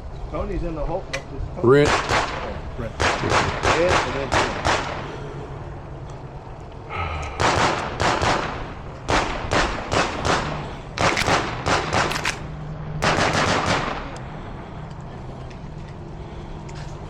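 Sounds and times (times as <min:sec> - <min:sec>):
pistol shots in rapid strings: 0:01.8 - 0:05.2, 0:07.4 - 0:14.2.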